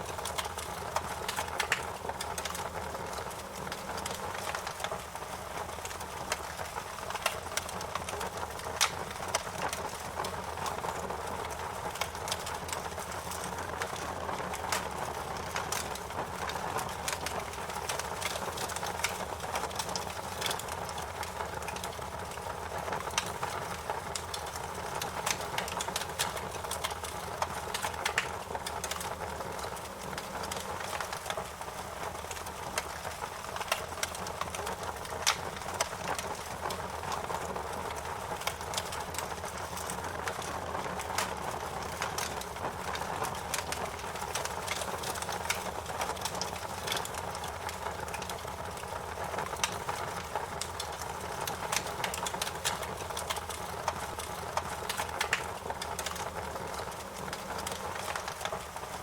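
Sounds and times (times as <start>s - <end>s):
steady hiss of burning: 0.0s - 59.0s
wood fire crackling and popping: 0.0s - 59.0s.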